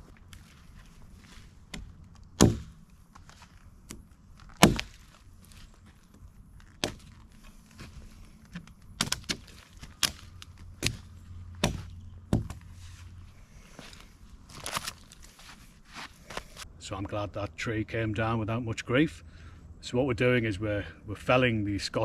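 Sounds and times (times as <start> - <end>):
wood knocking and cracking: 1.7 - 12.6.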